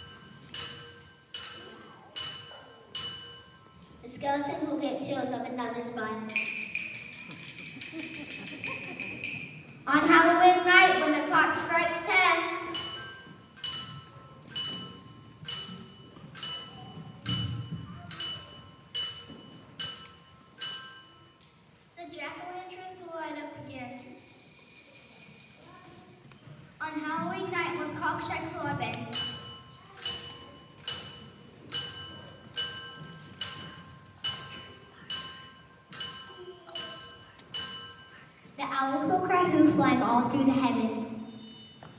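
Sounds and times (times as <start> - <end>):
bell-like metal strokes ringing: 0.0 - 4.7, 12.5 - 21.8, 23.9 - 26.3, 29.1 - 38.6, 41.1 - 41.9.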